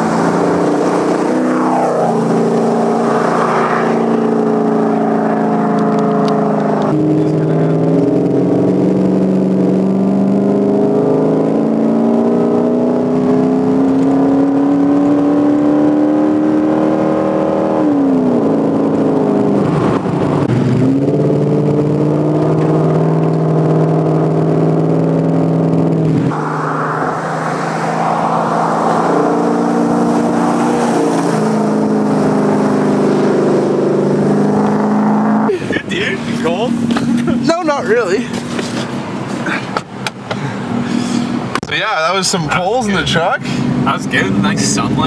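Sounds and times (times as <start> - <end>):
rushing noise: 0.0 - 5.6, 26.3 - 33.4
truck engine accelerating: 0.0 - 45.0.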